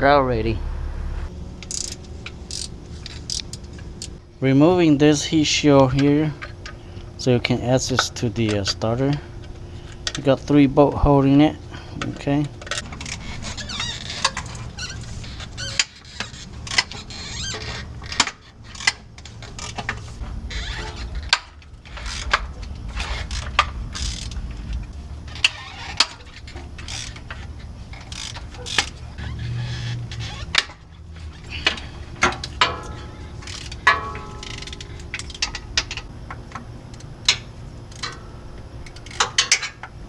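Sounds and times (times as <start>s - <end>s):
steady low rumble: 0.0s - 40.0s
ratchet wrench clicking: 1.6s - 4.2s, 23.0s - 24.4s, 25.3s - 27.4s, 28.0s - 30.8s, 33.4s - 36.1s
metal parts clinking: 20.8s - 29.2s, 30.0s - 36.1s.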